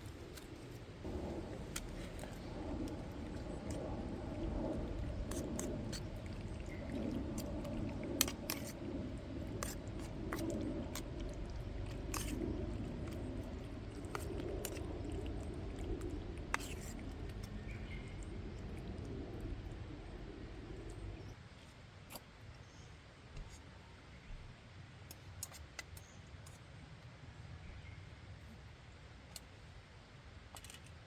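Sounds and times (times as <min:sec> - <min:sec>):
wood fire crackling: 0:00.0 - 0:17.4.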